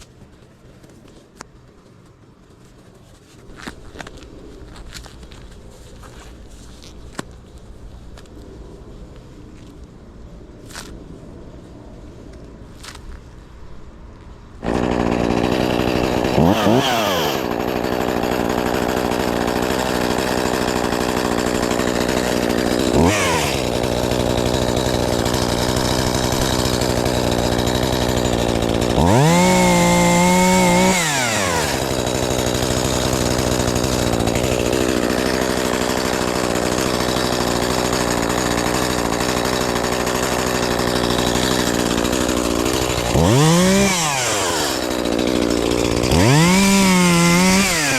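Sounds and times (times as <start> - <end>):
chainsaw revving: 14.6 - 47.9.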